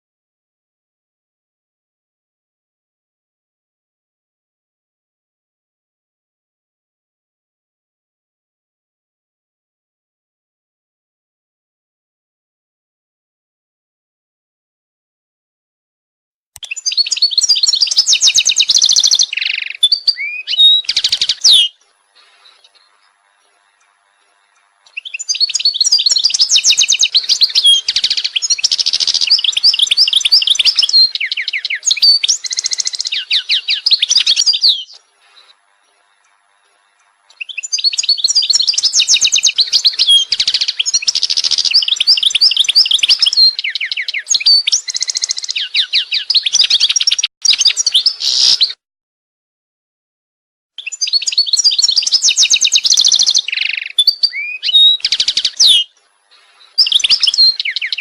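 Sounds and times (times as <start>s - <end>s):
songbird chirping and trilling: 16.6s - 48.8s, 50.8s - 58.0s.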